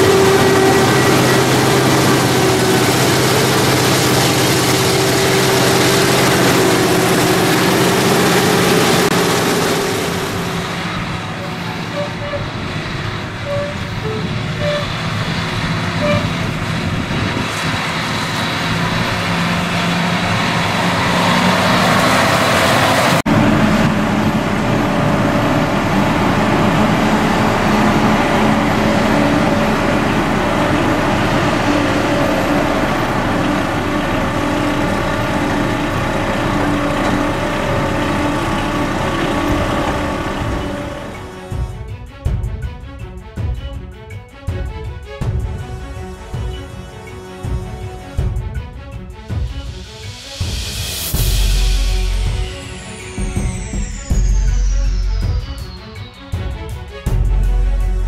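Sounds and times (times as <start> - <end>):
diesel machinery running: 0.0 - 42.8, 49.3 - 58.0
steady engine hum: 0.0 - 44.6.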